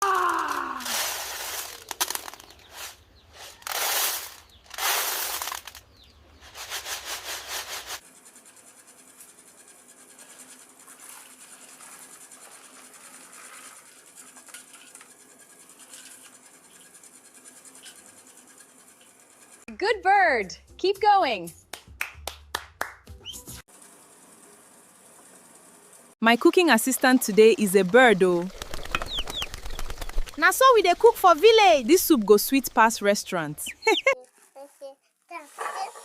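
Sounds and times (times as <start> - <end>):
rough rubbing and scraping: 0.8 - 19.7, 27.5 - 36.0
faint scratching: 6.4 - 19.6, 31.6 - 36.0.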